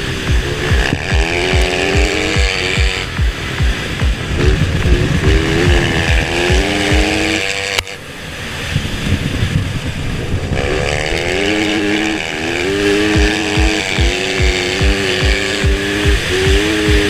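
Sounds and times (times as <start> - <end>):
music with kick-drum beat: 0.0 - 7.4, 13.2 - 17.0
rough rumbling noise: 0.0 - 17.0.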